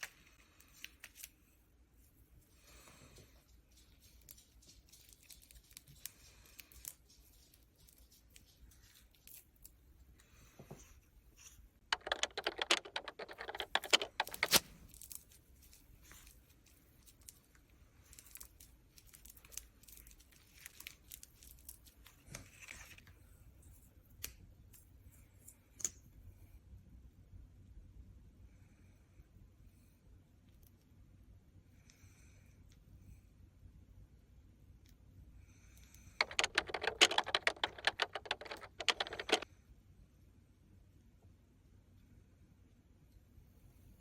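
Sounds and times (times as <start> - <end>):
handling small objects and paper: 0.0 - 26.1, 36.2 - 39.4.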